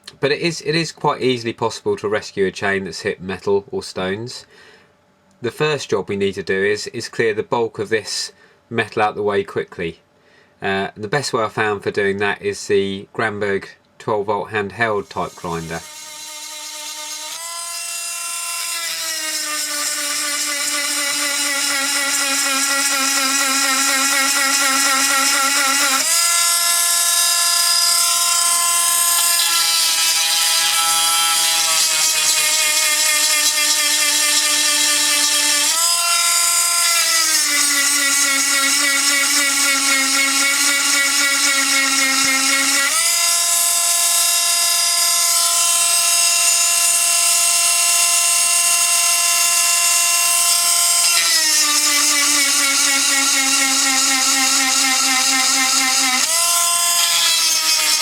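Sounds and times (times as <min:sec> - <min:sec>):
grinder motor whining: 0:15.0 - 0:58.0.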